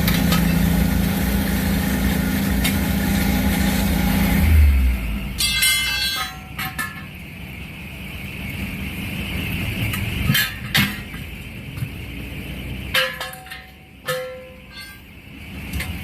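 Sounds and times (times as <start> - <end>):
low engine hum: 0.0 - 5.5
metal tools clanking on steel wheels: 5.4 - 7.1, 12.9 - 16.0.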